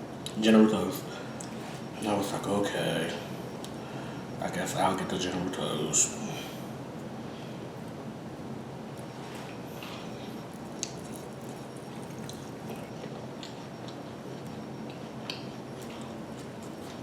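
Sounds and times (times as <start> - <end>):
steady room hum: 0.0 - 17.0
wet eating clicks and squishes: 10.5 - 17.0.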